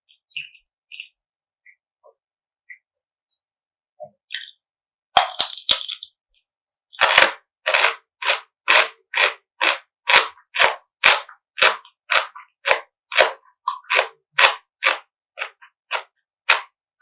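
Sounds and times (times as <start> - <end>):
crunchy chewing of food: 6.9 - 16.7.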